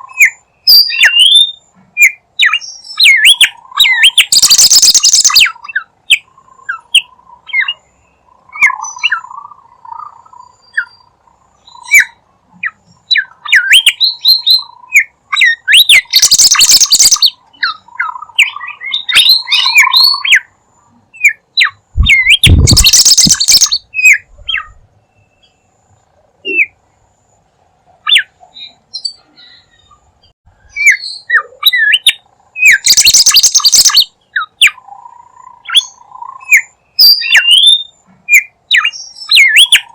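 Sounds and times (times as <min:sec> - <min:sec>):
bird chirping and whistling: 0:00.1 - 0:07.8, 0:08.5 - 0:09.3, 0:11.6 - 0:20.5, 0:21.2 - 0:24.8, 0:28.0 - 0:29.9, 0:30.7 - 0:34.8, 0:35.6 - 0:39.9
harsh bird squawking: 0:03.0 - 0:05.6, 0:15.4 - 0:20.4, 0:22.0 - 0:24.7, 0:30.9 - 0:37.8.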